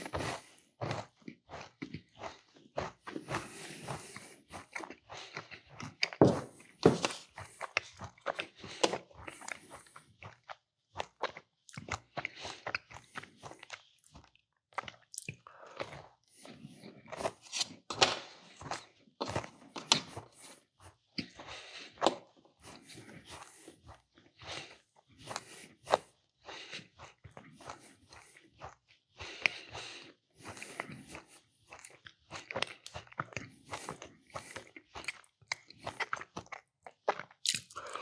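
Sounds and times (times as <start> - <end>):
chewing and crunching cookies: 0.0 - 38.0.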